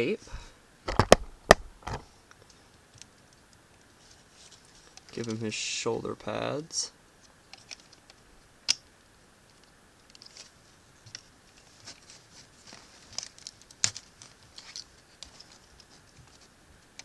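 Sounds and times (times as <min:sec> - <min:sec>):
plastic parts snapping: 0:00.9 - 0:02.0
plastic parts clicking and rustling: 0:00.9 - 0:02.1.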